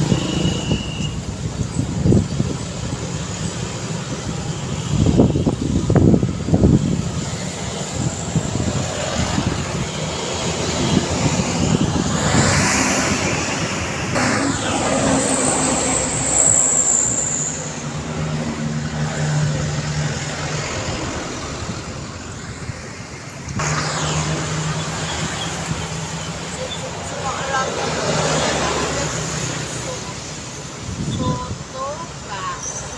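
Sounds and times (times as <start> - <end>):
motor vehicles passing: 0.0 - 32.9
high-pitched squeal: 7.9 - 19.9, 23.6 - 30.4.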